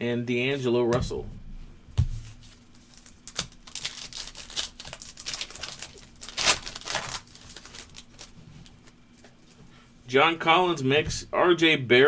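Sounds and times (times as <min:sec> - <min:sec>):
cards rustling: 0:02.2 - 0:09.7
foil wrapper crinkling and tearing: 0:02.5 - 0:09.3.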